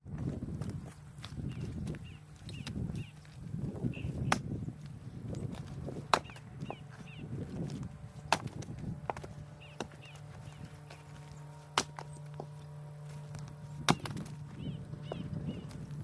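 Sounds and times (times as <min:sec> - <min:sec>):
low steady hum: 0:00.0 - 0:16.0
small birds chirping: 0:00.1 - 0:16.0
axe chopping firewood: 0:04.2 - 0:04.6, 0:05.6 - 0:06.7, 0:08.2 - 0:10.2, 0:10.8 - 0:14.6.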